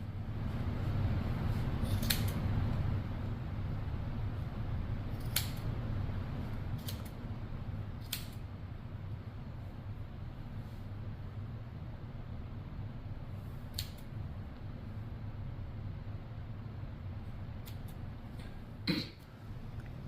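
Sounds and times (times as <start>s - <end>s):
steady low hum: 0.0s - 20.0s
scissors snipping yarn: 1.8s - 2.4s, 5.1s - 5.7s, 6.8s - 7.2s, 8.0s - 8.4s, 13.7s - 14.1s, 17.6s - 18.0s.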